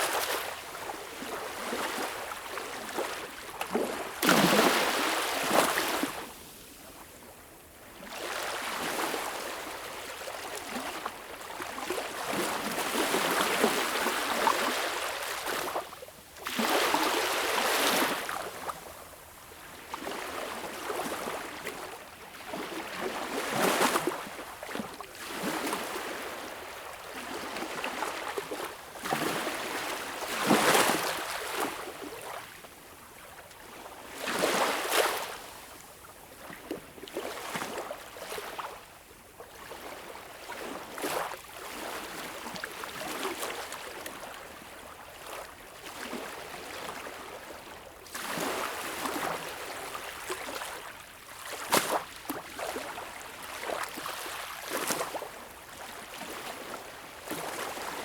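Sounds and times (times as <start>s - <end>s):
waves lapping on shore: 0.0s - 6.2s, 16.4s - 18.7s, 39.6s - 58.0s.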